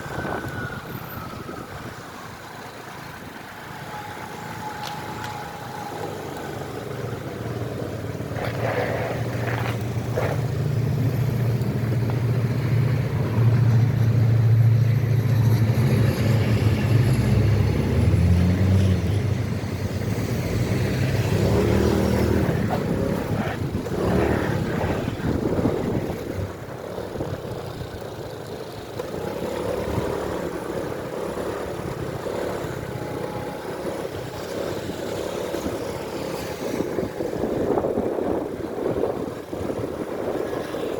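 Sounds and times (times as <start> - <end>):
motor traffic and road noise: 0.0 - 40.9
motorcycle engine: 19.0 - 40.9.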